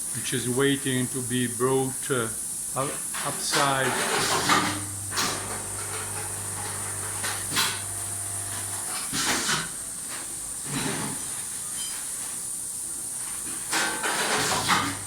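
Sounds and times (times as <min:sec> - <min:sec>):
pneumatic hissing and clacking: 0:01.3 - 0:15.0.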